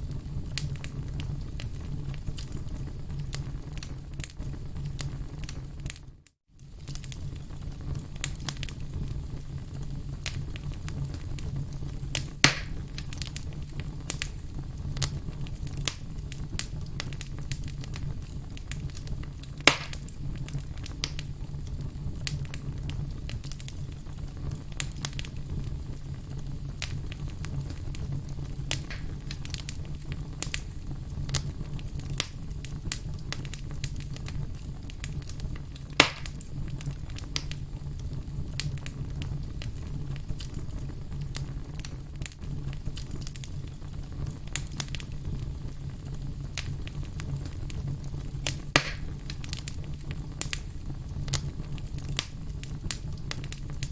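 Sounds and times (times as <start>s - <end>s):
fire crackling: 0.0s - 53.9s
low fire rumble: 0.0s - 53.9s
firewood popping: 6.7s - 9.0s, 10.2s - 21.3s, 22.2s - 53.9s.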